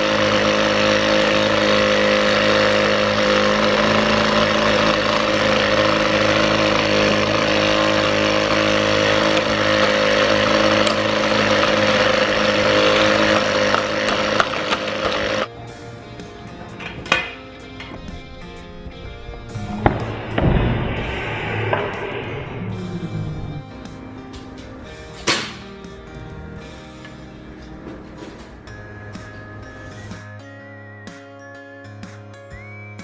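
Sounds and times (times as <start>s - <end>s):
small electric motor humming: 0.0s - 15.5s.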